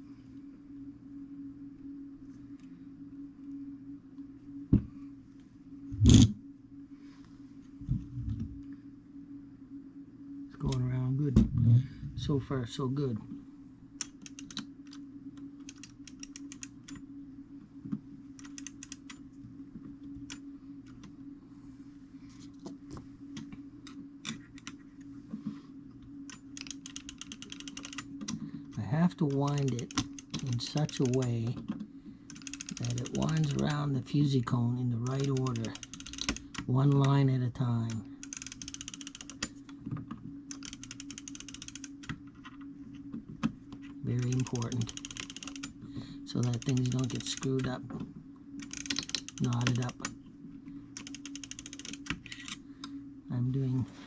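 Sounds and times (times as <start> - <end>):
steady low hum: 0.0 - 54.0
clock ratchet clicking: 26.5 - 28.0, 29.3 - 31.3, 32.3 - 33.7, 35.0 - 36.5, 38.2 - 39.5, 40.5 - 41.9, 44.2 - 45.7, 46.3 - 47.7, 48.6 - 50.0, 51.0 - 52.1.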